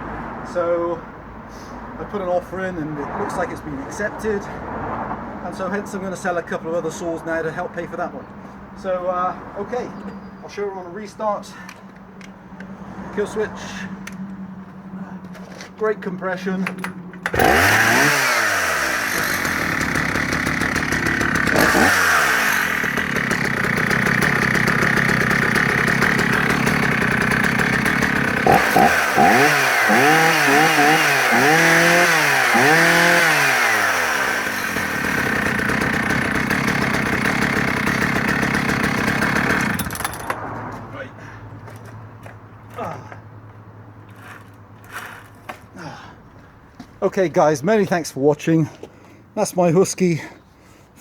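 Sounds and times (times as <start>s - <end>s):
chainsaw starting and revving: 17.2s - 40.3s.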